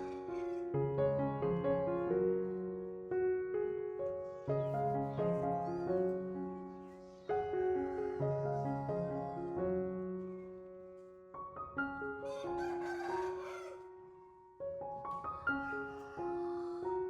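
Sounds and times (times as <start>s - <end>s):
soft piano music: 0.0s - 17.0s
harsh animal call: 12.3s - 13.8s.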